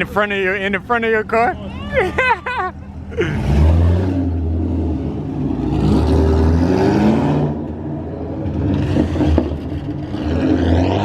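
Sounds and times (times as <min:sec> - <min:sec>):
car engine revving: 0:02.5 - 0:11.0.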